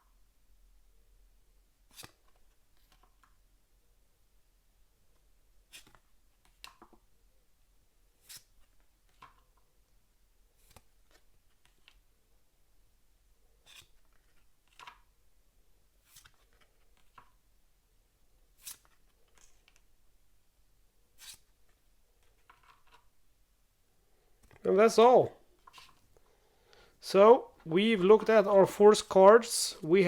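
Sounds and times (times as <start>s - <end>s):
cards and paper rustling: 13.6s - 15.0s, 16.0s - 17.4s, 18.6s - 19.9s, 21.2s - 23.1s, 24.3s - 26.3s, 27.6s - 30.0s.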